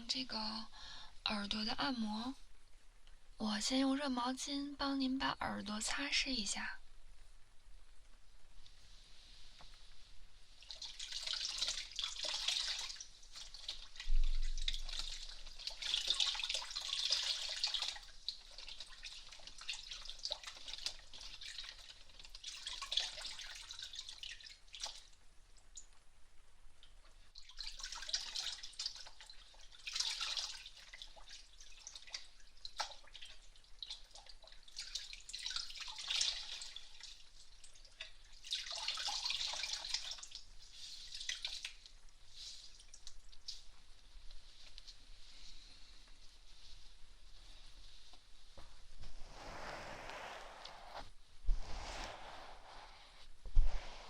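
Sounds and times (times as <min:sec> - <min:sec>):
towel rubbing on microphone: 0:44.4 - 0:54.0.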